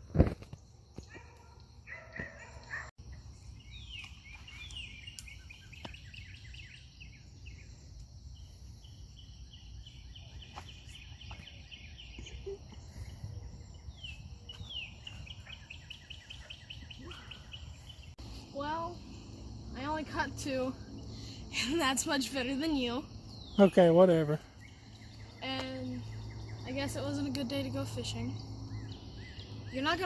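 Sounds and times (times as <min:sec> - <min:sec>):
bird chirping: 0:00.6 - 0:30.0.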